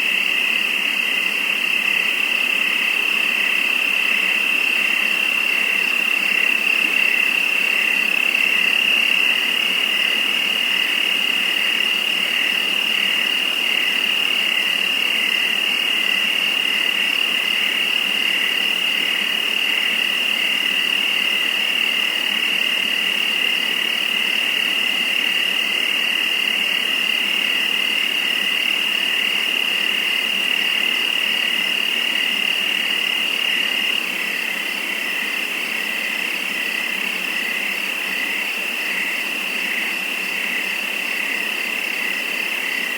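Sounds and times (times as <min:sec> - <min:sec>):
crickets chirping: 0:00.0 - 0:42.9.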